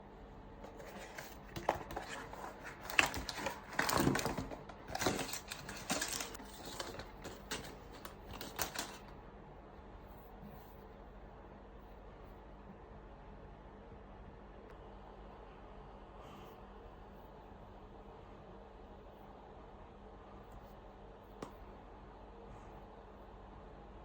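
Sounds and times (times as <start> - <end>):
packaging clicks and taps: 0.6 - 9.1
packaging rustling and scraping: 0.6 - 9.1.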